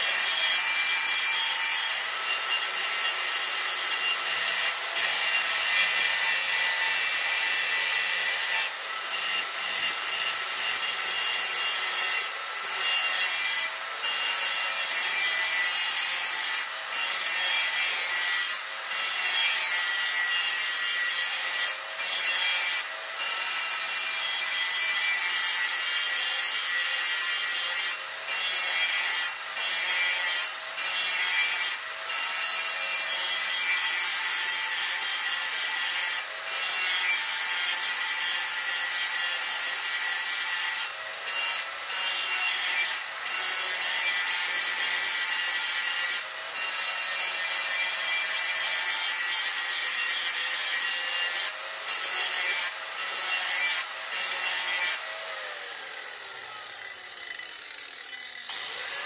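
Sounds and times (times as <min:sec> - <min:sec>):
grinding wheel on steel: 0:00.0 - 0:59.0
grinder motor whine: 0:51.0 - 0:59.0.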